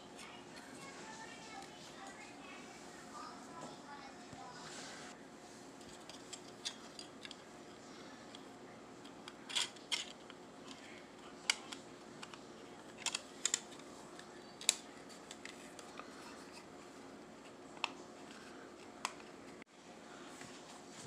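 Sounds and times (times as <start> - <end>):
plastic parts clicking and snipping: 5.8 - 7.4, 9.0 - 13.9, 14.6 - 16.6.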